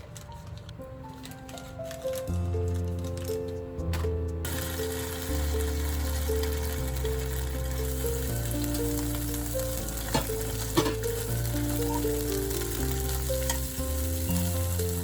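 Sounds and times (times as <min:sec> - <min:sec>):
background music: 0:00.0 - 0:15.0
food sizzling in a frying pan: 0:04.5 - 0:15.0.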